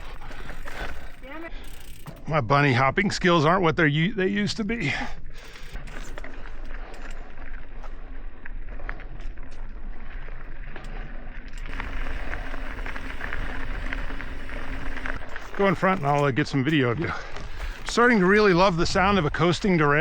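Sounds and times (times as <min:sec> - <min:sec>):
bike hub ticking: 0:00.0 - 0:02.3, 0:11.6 - 0:16.3
bike rattling over bumps: 0:00.0 - 0:02.3, 0:04.9 - 0:20.0
bike tyres on dirt and gravel: 0:00.0 - 0:02.3, 0:04.3 - 0:20.0.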